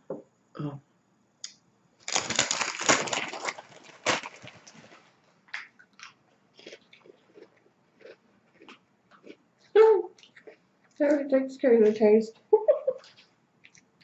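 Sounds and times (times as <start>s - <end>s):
cookie crunching: 1.4s - 9.4s
chewing clicks: 13.0s - 13.9s.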